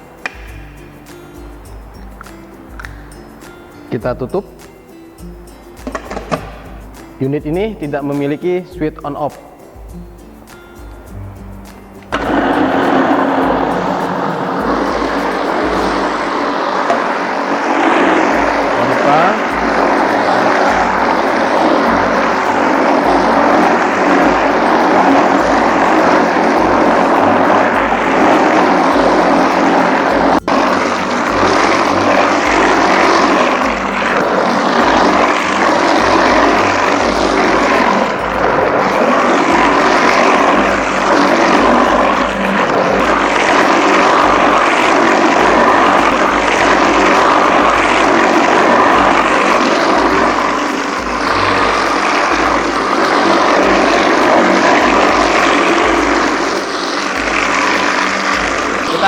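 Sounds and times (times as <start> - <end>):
grinder-mixer running: 10.5 - 59.0.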